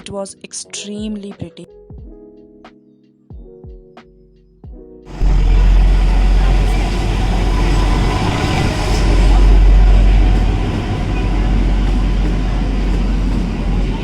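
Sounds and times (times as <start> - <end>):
soft background music: 0.0 - 6.3.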